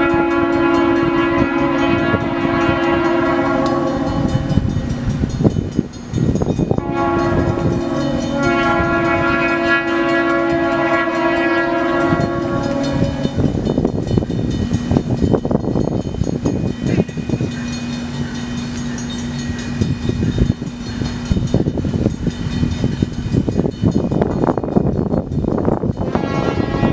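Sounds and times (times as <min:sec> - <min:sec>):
locomotive air horn: 0:00.0 - 0:04.7, 0:06.7 - 0:13.6, 0:26.0 - 0:26.9
train wheels clattering on rails: 0:00.0 - 0:26.9.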